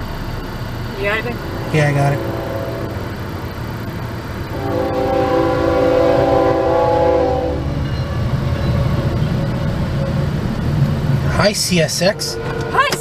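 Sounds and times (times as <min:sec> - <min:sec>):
low steady rumble: 0:00.0 - 0:13.0
locomotive air horn: 0:01.6 - 0:03.4, 0:04.5 - 0:07.8, 0:12.1 - 0:13.0.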